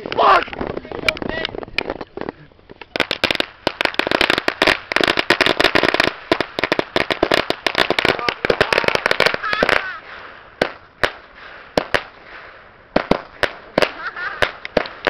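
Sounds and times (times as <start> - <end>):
firecrackers banging: 0.0 - 15.0.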